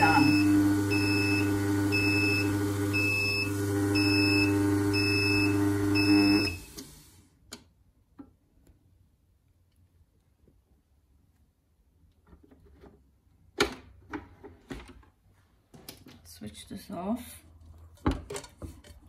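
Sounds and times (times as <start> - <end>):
grinder motor running: 0.0 - 6.6
machine beeping: 0.0 - 6.7.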